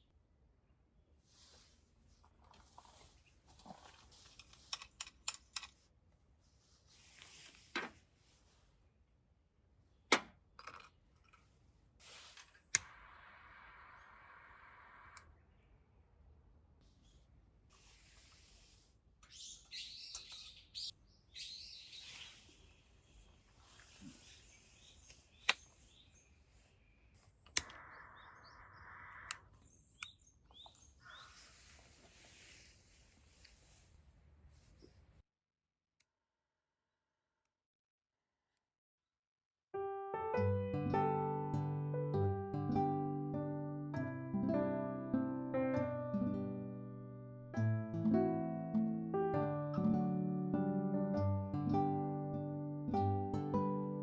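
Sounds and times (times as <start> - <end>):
rustling: 1.4 - 4.7, 21.9 - 26.8
small birds chirping: 19.2 - 32.2
sharp clicks: 27.2 - 30.2.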